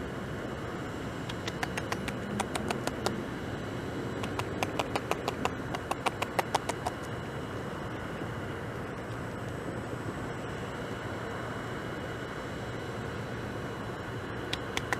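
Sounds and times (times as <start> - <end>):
steady background rush: 0.0 - 14.9
beaver gnawing bark: 1.3 - 3.2, 4.2 - 7.1.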